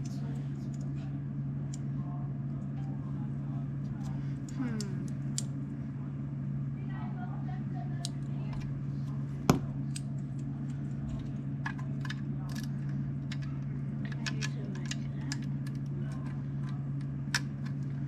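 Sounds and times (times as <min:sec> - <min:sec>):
low hum: 0:00.0 - 0:18.0.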